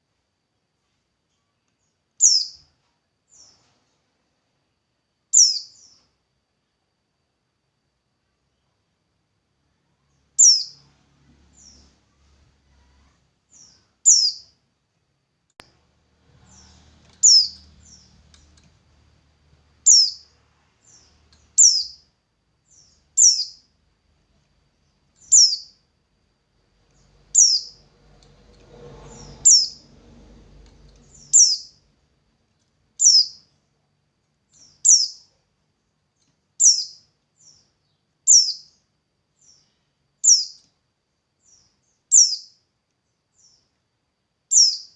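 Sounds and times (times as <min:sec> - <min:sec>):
small songbird chirping: 0:01.2 - 0:04.0, 0:05.2 - 0:06.8, 0:09.6 - 0:14.6, 0:15.6 - 0:18.8, 0:19.5 - 0:25.9, 0:26.7 - 0:32.1, 0:32.9 - 0:40.8, 0:41.4 - 0:43.9, 0:44.5 - 0:44.9.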